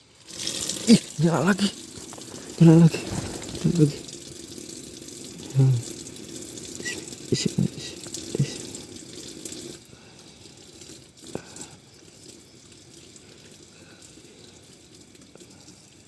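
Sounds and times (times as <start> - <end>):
water running from a tap: 0.0 - 16.0
faint hiss: 0.8 - 4.3, 5.3 - 5.9.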